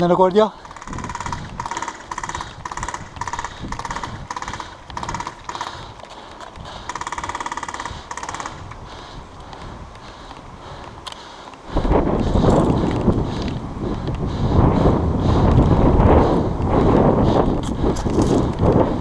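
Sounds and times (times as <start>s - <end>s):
airsoft guns firing bursts: 0.6s - 6.0s, 6.8s - 8.7s.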